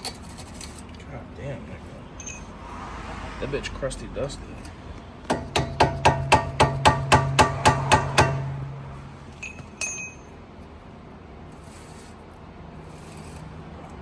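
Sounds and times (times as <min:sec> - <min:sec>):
light metallic clinks: 0:02.2 - 0:02.5, 0:09.3 - 0:10.4
hammer striking metal: 0:05.3 - 0:10.4.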